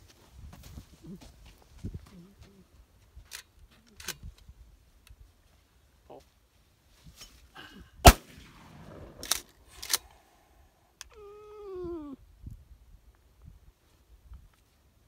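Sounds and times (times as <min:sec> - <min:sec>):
shotgun shots: 0:08.0 - 0:09.5
high-pitched cry: 0:11.0 - 0:12.2.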